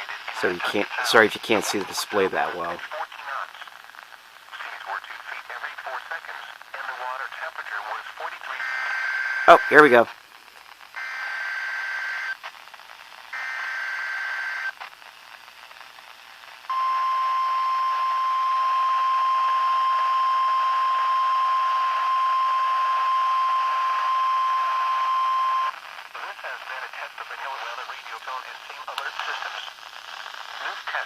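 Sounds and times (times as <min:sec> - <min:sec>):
steady single-pitch alert tone: 0:16.7 - 0:25.7.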